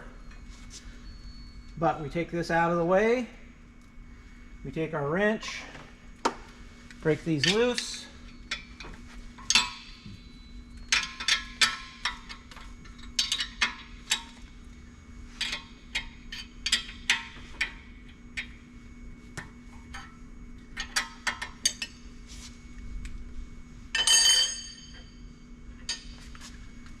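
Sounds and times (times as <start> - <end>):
metal lug nuts clinking: 10.9 - 14.4
ringing metal clank: 24.0 - 25.2.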